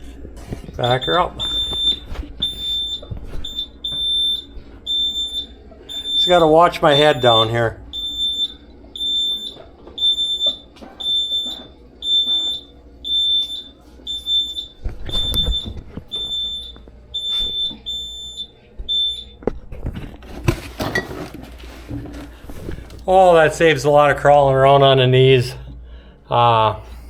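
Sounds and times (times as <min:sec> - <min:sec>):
reverse warning beeper: 0:00.8 - 0:19.4.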